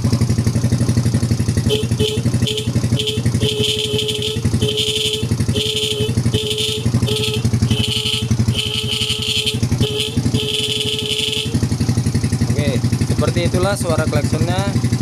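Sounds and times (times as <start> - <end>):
motorcycle engine idling: 0.0 - 15.0
motorcycle horn honking: 1.5 - 12.2.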